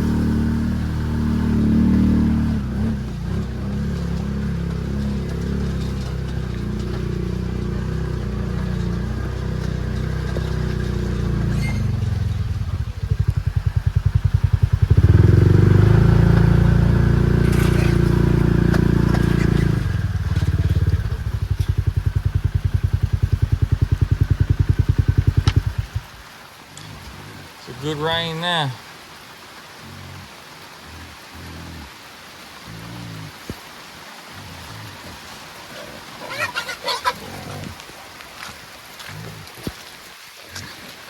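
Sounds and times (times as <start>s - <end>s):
vehicle engine running: 0.0s - 26.3s.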